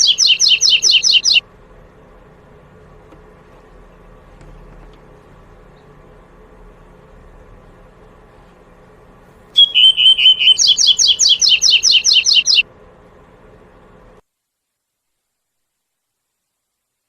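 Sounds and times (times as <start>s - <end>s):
seedeater bird singing: 0.0s - 1.4s, 9.6s - 12.6s.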